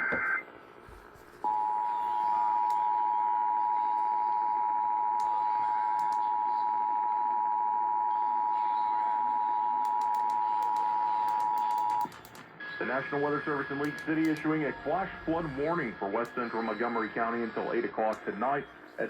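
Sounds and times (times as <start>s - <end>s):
two-tone alarm tone: 1.4s - 15.0s.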